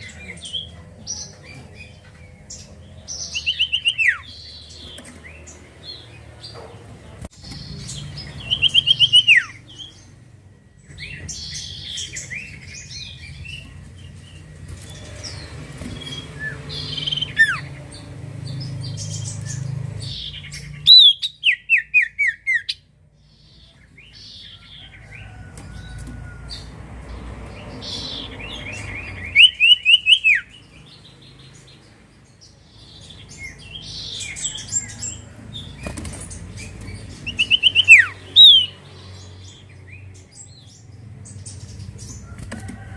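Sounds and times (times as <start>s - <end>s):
bird whistling song: 3.4s - 4.5s, 8.3s - 9.9s, 16.0s - 17.7s, 19.1s - 22.8s, 28.1s - 30.6s, 37.2s - 38.8s.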